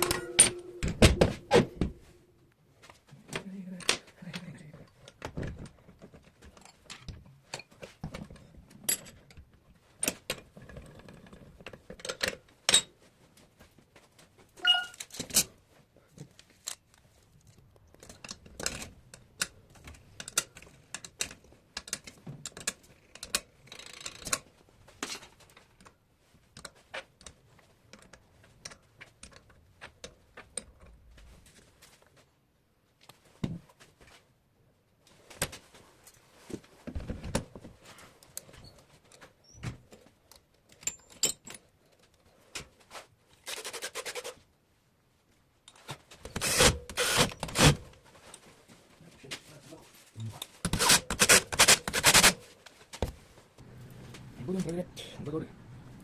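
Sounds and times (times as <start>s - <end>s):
ringing metal clink: 0.0s - 1.3s
hand tools and metal clinking: 0.0s - 2.2s, 14.6s - 15.5s, 40.3s - 42.3s.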